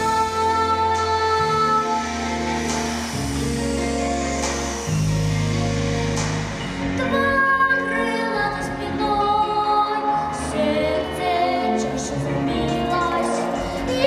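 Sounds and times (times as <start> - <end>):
instrumental backing track: 0.0 - 14.0
child singing: 7.0 - 14.0.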